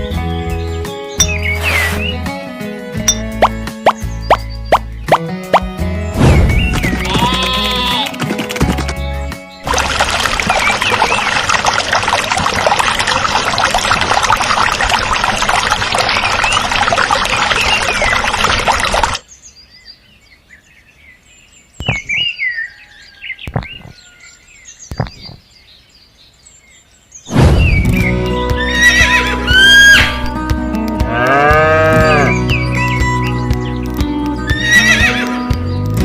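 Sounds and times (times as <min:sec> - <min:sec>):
small birds chirping: 0:00.1 - 0:02.4, 0:03.1 - 0:08.2, 0:15.9 - 0:29.2, 0:32.0 - 0:35.0
running water: 0:09.6 - 0:19.2.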